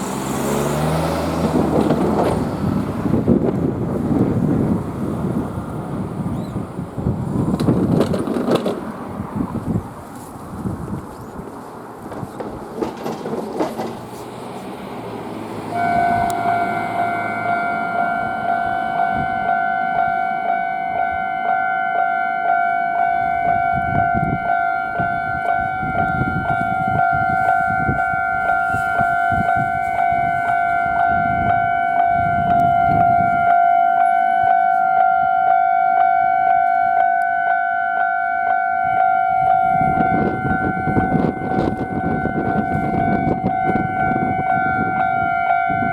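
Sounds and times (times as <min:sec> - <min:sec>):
level crossing bell ringing: 0:15.7 - 0:45.9.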